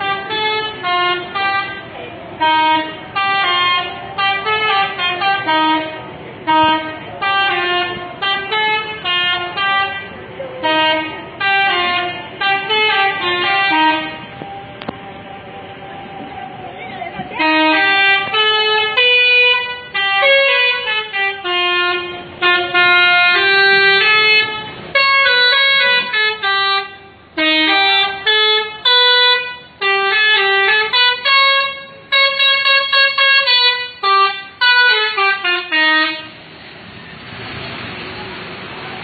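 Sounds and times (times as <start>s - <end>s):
multi-tone bus horn tune: 0.0s - 15.3s, 17.2s - 36.6s
rushing noise: 36.0s - 39.0s.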